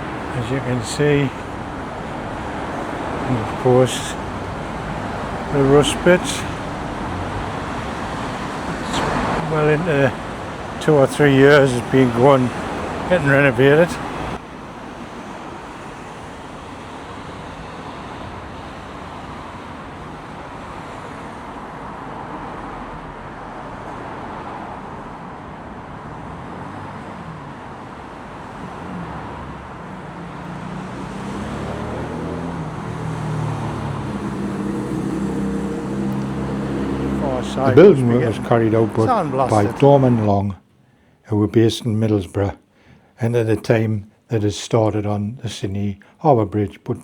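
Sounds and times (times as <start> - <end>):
passing cars: 0.0 - 41.4
low engine drone: 33.8 - 40.4.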